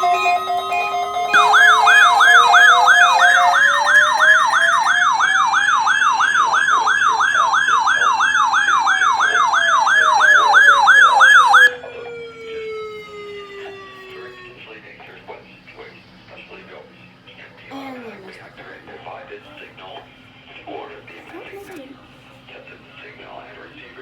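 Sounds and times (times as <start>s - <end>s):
electronic siren wail: 0.0s - 14.6s
electronic siren yelp: 0.0s - 14.6s.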